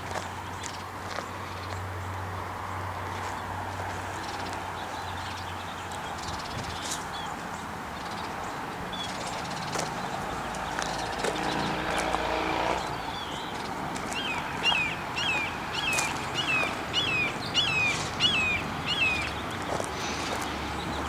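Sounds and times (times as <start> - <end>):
low droning hum: 10.2 - 13.4
hawk calling: 14.1 - 19.4.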